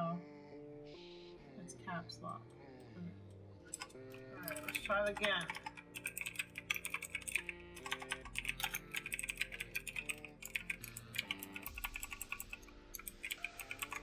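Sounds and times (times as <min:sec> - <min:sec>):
quiet background music: 0:00.0 - 0:14.0
fast typing on keyboard: 0:03.7 - 0:14.0.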